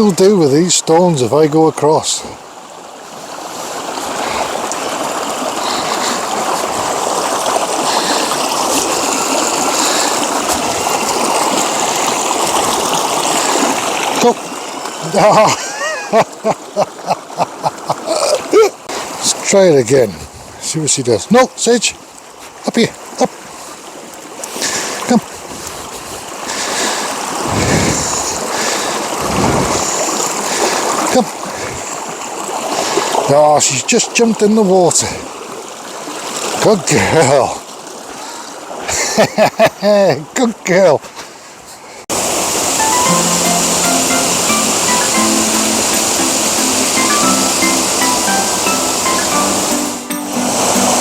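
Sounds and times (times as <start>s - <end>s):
river water rushing over stones: 0.0s - 39.3s, 39.9s - 51.0s
wind buffeting microphone: 27.4s - 28.5s, 29.1s - 30.1s.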